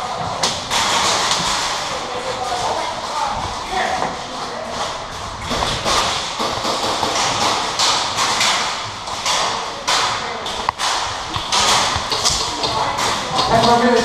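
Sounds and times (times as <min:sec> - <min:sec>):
thumps taps and rustling: 0:05.4 - 0:14.0.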